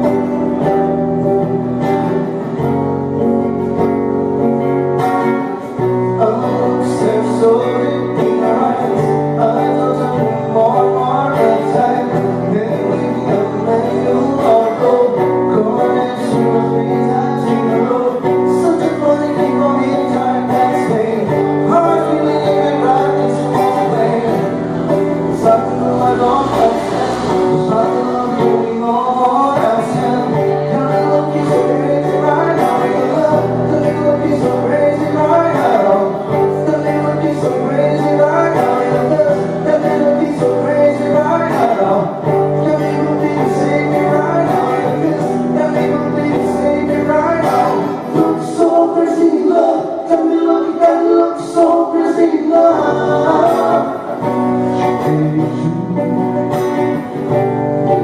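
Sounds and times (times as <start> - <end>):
guitar accompaniment: 0.0 - 58.0
man singing pop melody: 0.0 - 58.0
sustained low bass line: 22.8 - 32.2.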